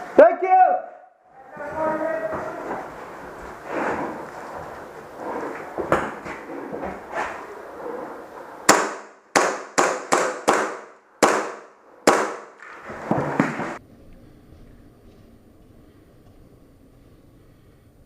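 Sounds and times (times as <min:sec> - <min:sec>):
airsoft rifle shots: 0:08.7 - 0:12.8.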